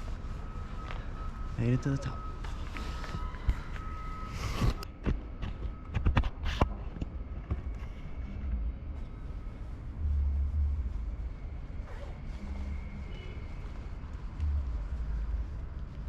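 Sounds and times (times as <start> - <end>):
low rumble: 6.7 - 16.0.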